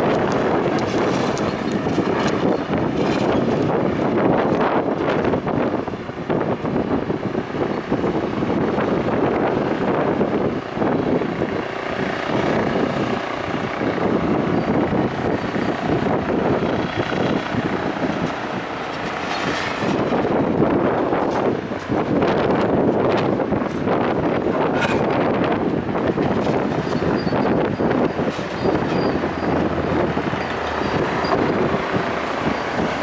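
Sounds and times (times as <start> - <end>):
strong wind buffeting microphone: 0.0 - 33.0.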